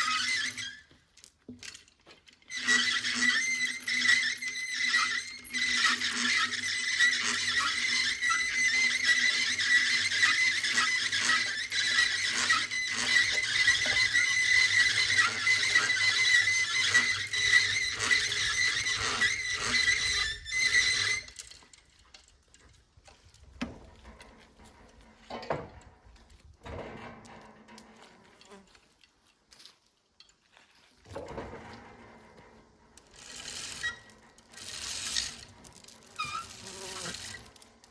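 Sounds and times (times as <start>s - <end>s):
chain hoist squealing: 0.0s - 1.8s, 2.4s - 22.1s, 33.0s - 37.9s.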